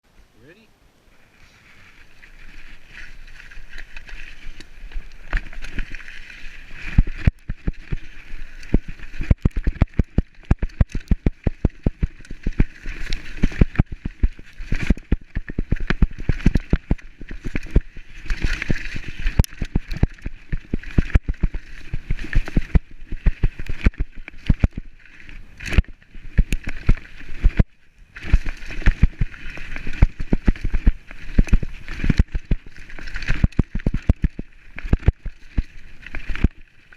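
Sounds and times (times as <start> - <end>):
mountain bike rattling down trail: 1.5 - 36.9.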